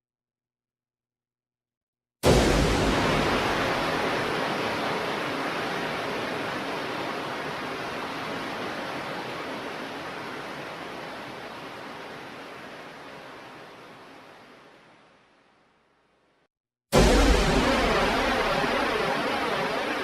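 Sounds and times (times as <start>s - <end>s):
sudden blast: 2.2s - 4.2s, 16.9s - 20.0s.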